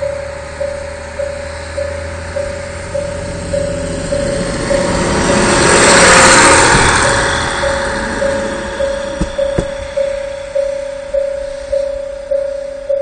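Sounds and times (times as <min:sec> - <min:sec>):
electronic crossing alarm tone: 0:00.0 - 0:13.0
railcar engine and wheels passing: 0:00.0 - 0:13.0.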